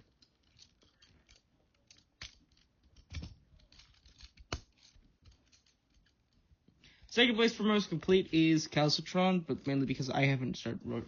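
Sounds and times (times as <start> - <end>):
plastic toy parts clicking: 0.0 - 6.4.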